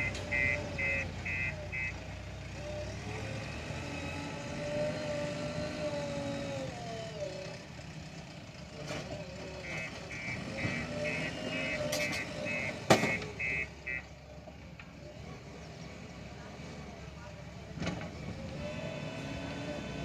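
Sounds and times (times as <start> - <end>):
reversing alarm beeping: 0.0 - 2.0, 9.6 - 14.0
diesel engine running: 0.0 - 20.0.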